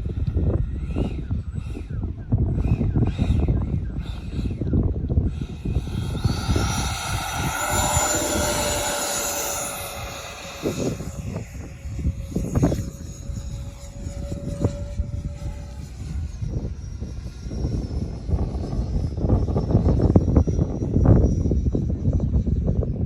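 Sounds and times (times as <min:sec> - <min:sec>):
wind buffeting microphone: 0:00.0 - 0:23.0
model jet fans whining: 0:03.6 - 0:21.0.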